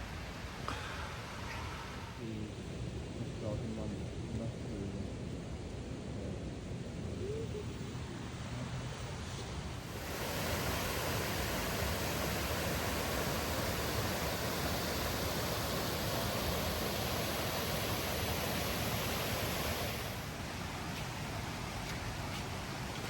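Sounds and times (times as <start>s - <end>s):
waterfall rushing: 9.7s - 23.0s.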